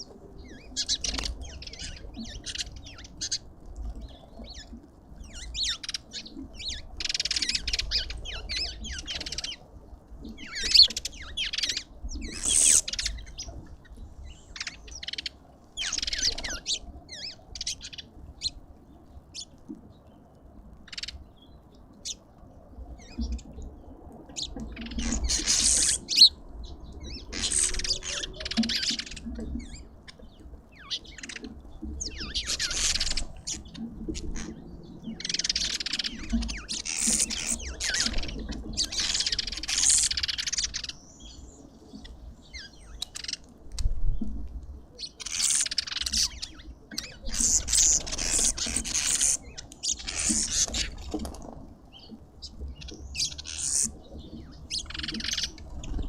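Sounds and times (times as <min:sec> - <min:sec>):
lovebirds chirping and screeching: 0:10.4 - 0:13.6, 0:14.2 - 0:18.6, 0:24.4 - 0:43.4, 0:44.9 - 0:56.0.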